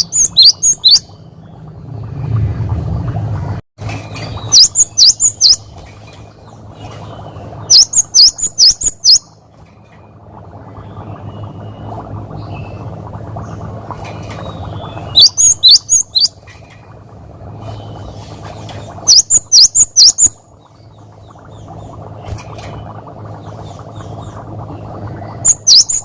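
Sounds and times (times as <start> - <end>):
bird singing whistled notes: 0.0 - 1.2, 4.4 - 5.6, 7.7 - 9.4, 14.8 - 16.3, 25.4 - 26.0
steady low hum: 0.0 - 26.0.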